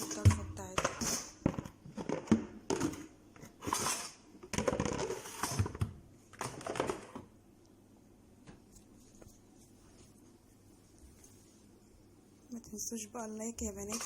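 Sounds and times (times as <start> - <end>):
plastic plates clattering: 0.0 - 7.3.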